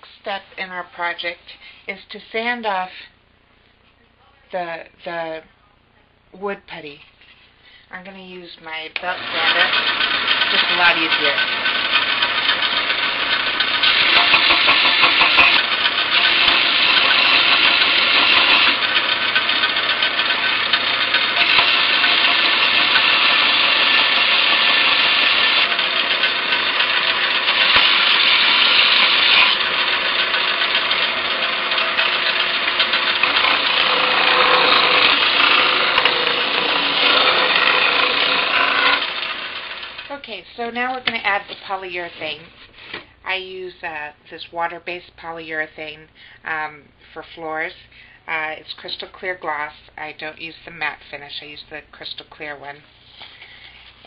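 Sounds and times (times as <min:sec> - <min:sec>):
belt sander sanding wood: 0:09.0 - 0:40.1.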